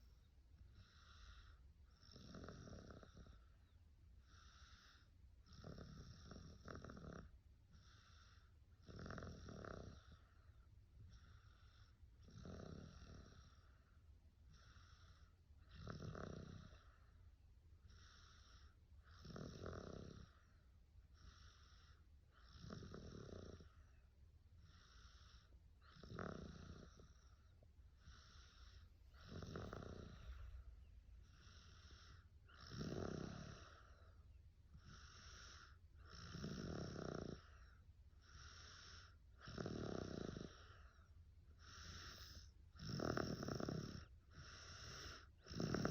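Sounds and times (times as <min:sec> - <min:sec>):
faint breath: 0:00.0 - 0:02.0, 0:03.2 - 0:05.4, 0:07.7 - 0:08.7, 0:10.0 - 0:12.1, 0:20.2 - 0:22.5, 0:23.6 - 0:26.0, 0:26.8 - 0:32.7, 0:40.4 - 0:42.7, 0:44.3 - 0:45.9
person snoring softly: 0:00.6 - 0:17.2, 0:17.8 - 0:24.0, 0:24.6 - 0:45.9.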